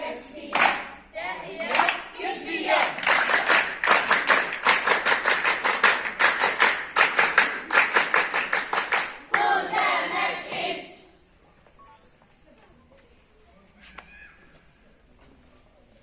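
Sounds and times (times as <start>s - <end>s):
voices chanting: 0.0s - 3.8s, 9.0s - 11.2s
rhythmic clapping in unison: 0.0s - 10.9s.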